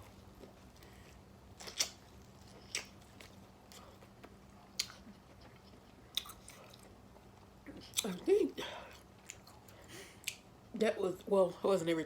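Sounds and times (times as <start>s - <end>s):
person chewing: 0.4s - 8.2s, 8.9s - 10.4s.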